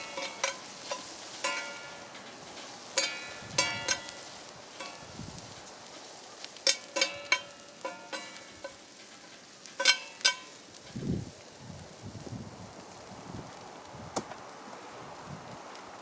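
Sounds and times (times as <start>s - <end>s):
metal utensil clinking on pot: 0.0s - 2.0s, 3.0s - 4.2s, 6.6s - 8.8s, 9.8s - 10.5s
food sizzling: 0.0s - 16.0s.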